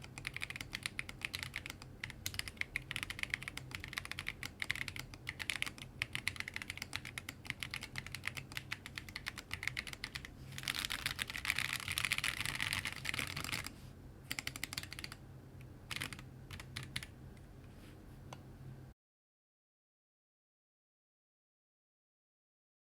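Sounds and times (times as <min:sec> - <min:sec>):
mechanical keyboard typing: 0:00.0 - 0:13.7, 0:14.3 - 0:15.2, 0:15.9 - 0:17.1.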